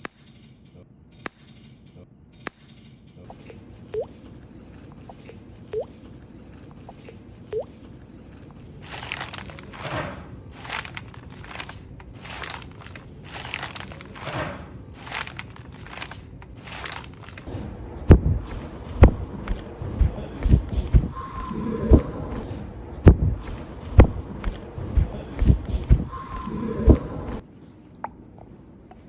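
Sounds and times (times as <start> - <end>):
crunching rustling strokes: 3.6 - 21.6, 22.3 - 27.4
heavy thuds: 16.7 - 27.4.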